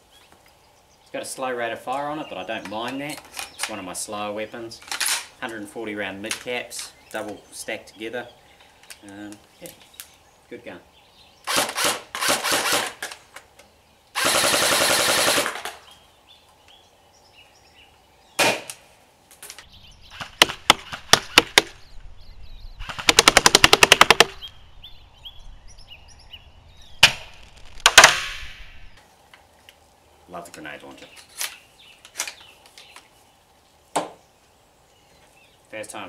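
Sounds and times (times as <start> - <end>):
airsoft rifle firing: 11.5 - 13.1, 14.2 - 15.8, 18.4 - 18.8, 22.8 - 24.4, 27.0 - 28.7.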